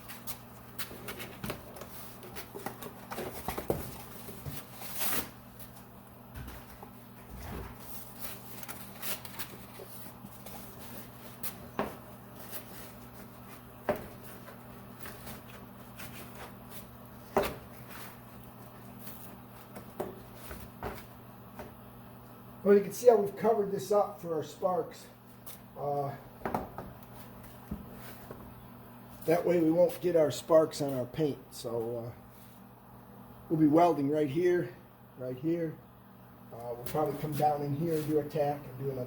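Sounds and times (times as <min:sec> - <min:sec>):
low electrical hum: 0:00.0 - 0:39.0.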